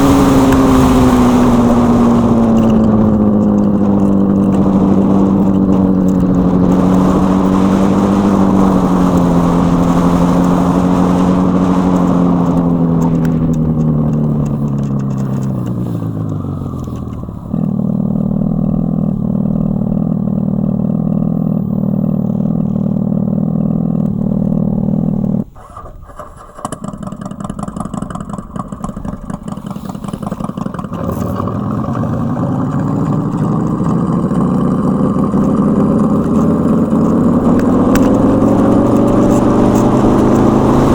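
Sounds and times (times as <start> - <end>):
synthetic engine sound: 29.7 - 40.9.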